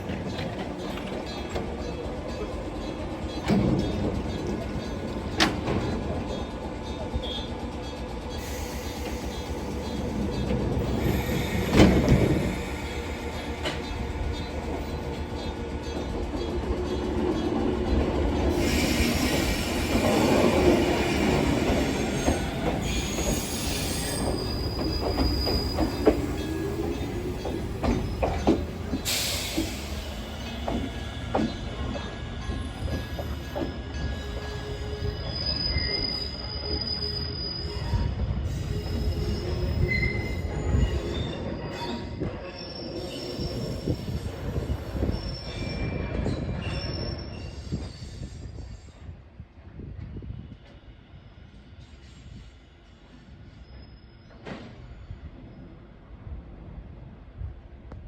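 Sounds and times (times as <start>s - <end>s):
wheels clicking on track: 0.0s - 35.8s
train rumble: 0.0s - 53.6s
train wheel flanges squealing: 0.0s - 55.9s.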